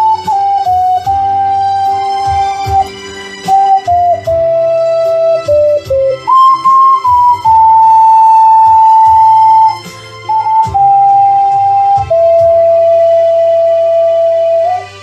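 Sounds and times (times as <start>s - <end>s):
low accompaniment: 0.0s - 15.0s
ocarina melody: 0.0s - 15.0s.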